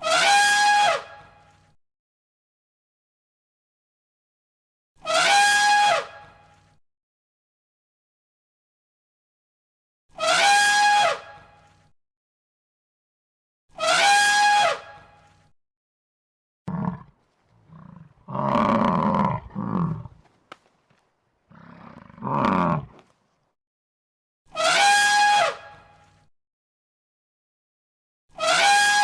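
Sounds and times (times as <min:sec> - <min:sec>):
horn-like animal call: 0:10.2 - 0:11.2, 0:13.8 - 0:14.8, 0:16.7 - 0:20.2, 0:24.6 - 0:25.6, 0:28.4 - 0:29.0
rough animal roaring: 0:16.7 - 0:20.2, 0:21.5 - 0:23.0.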